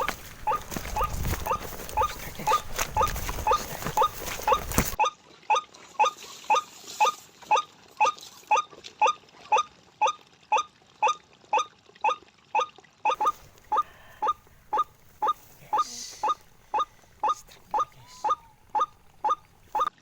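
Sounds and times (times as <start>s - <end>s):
rough rustling noise: 0.0s - 5.0s, 13.2s - 19.9s
waterhen call: 0.0s - 20.0s.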